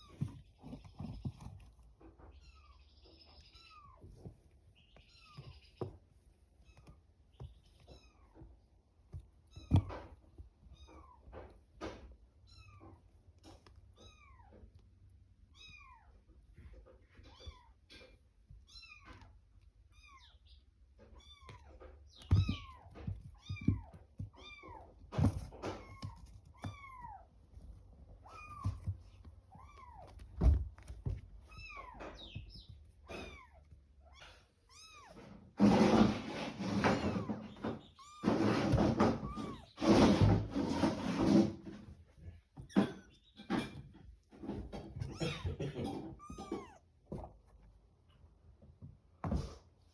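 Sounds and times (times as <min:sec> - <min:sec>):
thumps: 0:04.0 - 0:13.9, 0:21.1 - 0:34.4, 0:35.0 - 0:42.0
loud rustling noise: 0:35.2 - 0:42.0
kittens mewing: 0:45.0 - 0:47.1.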